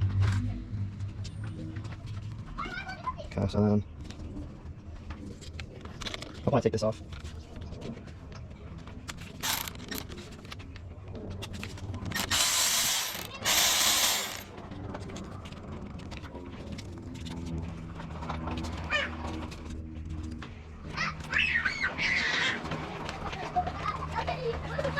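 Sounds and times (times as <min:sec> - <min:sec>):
ratchet wrench clicking: 0:09.4 - 0:10.0, 0:12.2 - 0:14.5.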